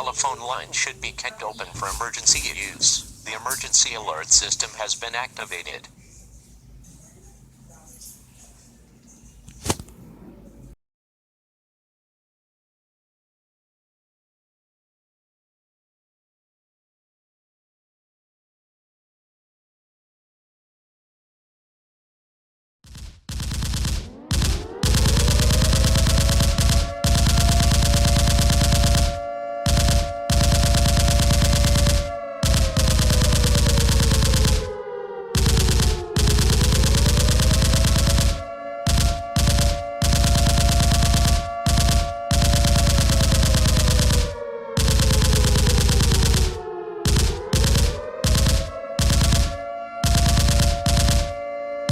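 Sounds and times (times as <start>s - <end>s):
air-raid siren wailing: 0.0s - 5.9s, 24.0s - 51.9s
machine-gun fire: 22.9s - 34.8s, 35.4s - 51.9s.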